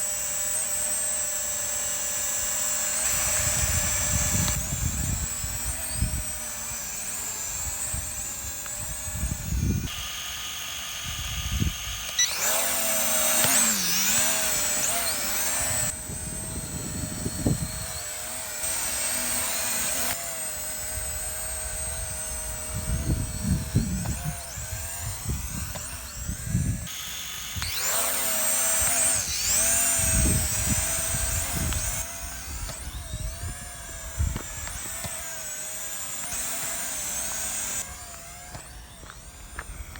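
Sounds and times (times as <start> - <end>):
drone propellers whining: 0.0 - 39.9
wind buffeting microphone: 3.1 - 6.5, 7.6 - 10.0, 11.0 - 12.1, 15.6 - 18.1, 20.9 - 26.9, 28.8 - 34.9.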